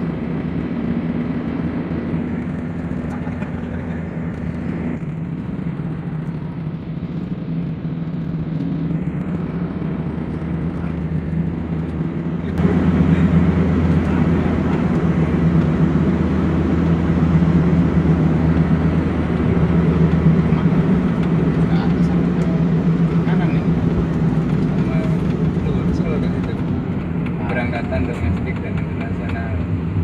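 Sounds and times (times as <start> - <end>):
road noise: 0.0 - 30.0
vehicle engine hum from inside: 0.0 - 30.0.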